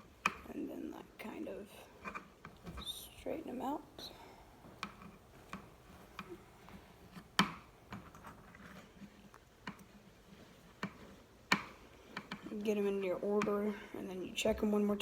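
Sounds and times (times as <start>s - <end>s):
cable wires clicking and tapping: 0.0s - 0.6s, 4.6s - 15.0s.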